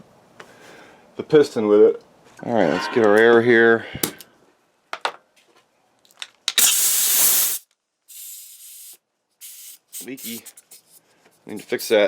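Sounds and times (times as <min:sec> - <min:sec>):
air leaking hiss: 0:06.6 - 0:10.7
compressed air hissing: 0:06.6 - 0:10.8.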